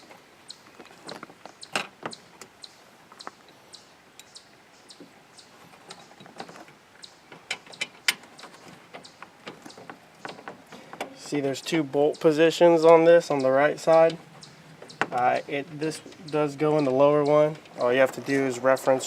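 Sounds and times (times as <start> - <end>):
metal parts clicking and tapping: 7.3 - 11.3.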